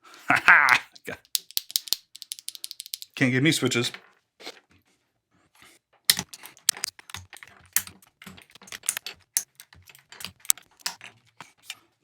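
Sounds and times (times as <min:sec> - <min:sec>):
mechanical keyboard clacking: 0:01.2 - 0:03.2, 0:06.1 - 0:11.0.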